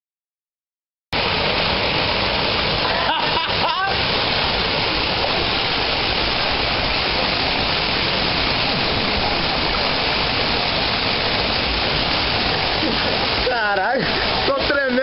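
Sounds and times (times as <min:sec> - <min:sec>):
waterfall roaring: 0:01.2 - 0:15.0.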